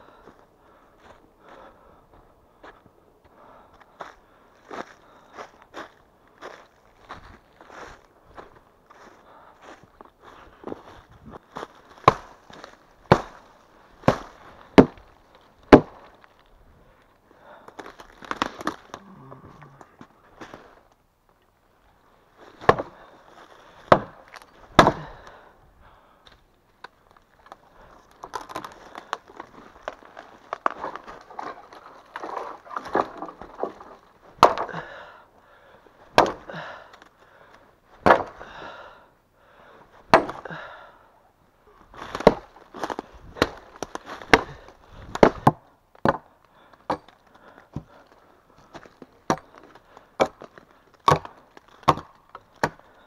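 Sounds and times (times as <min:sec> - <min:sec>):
axe chopping wood: 0:12.0 - 0:16.2, 0:22.6 - 0:23.1, 0:23.8 - 0:25.4, 0:28.2 - 0:35.0, 0:36.1 - 0:36.7, 0:38.0 - 0:38.6, 0:40.1 - 0:40.7, 0:42.0 - 0:48.0, 0:48.8 - 0:53.0
rustling and scraping: 0:26.7 - 0:34.4.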